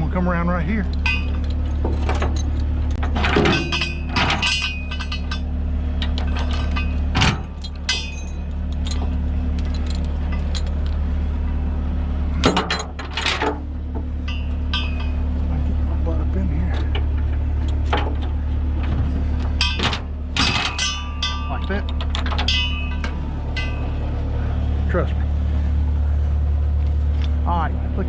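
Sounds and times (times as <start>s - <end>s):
diesel engine idling: 0.0s - 28.0s
metal chains clanking: 0.8s - 11.0s, 12.4s - 15.8s, 16.7s - 24.7s.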